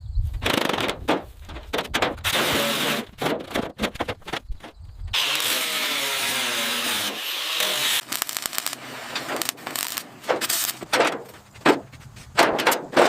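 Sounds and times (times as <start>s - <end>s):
scraping and knocking bursts: 0.4s - 13.0s
tool hissing whir: 5.2s - 10.8s.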